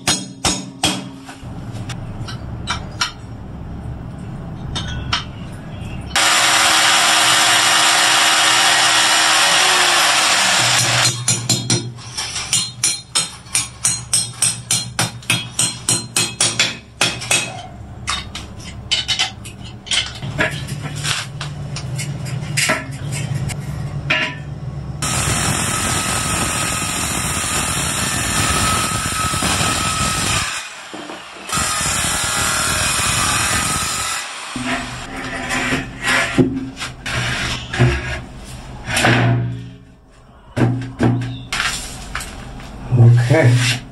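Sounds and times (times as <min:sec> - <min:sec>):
power tool running: 0:06.2 - 0:11.2, 0:25.0 - 0:35.1.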